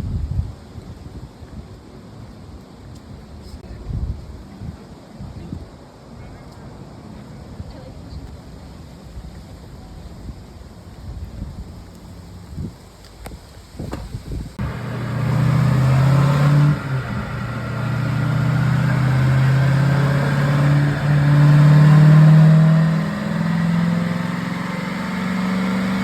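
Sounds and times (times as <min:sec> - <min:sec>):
car engine running under load: 0:10.0 - 0:26.0.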